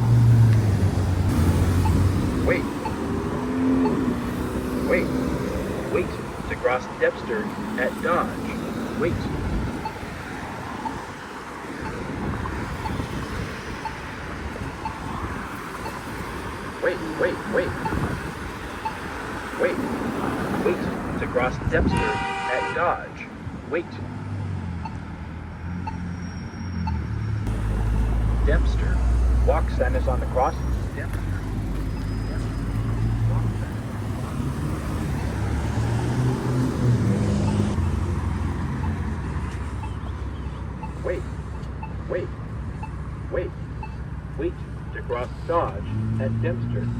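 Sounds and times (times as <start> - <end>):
vehicle engines pulling away: 0.0 - 21.8, 23.2 - 46.9
crosswalk button ticking: 0.0 - 22.2, 24.8 - 25.2, 26.8 - 46.4
street traffic: 0.0 - 46.9
wind on microphone: 9.1 - 11.1, 11.8 - 16.8, 17.7 - 19.4.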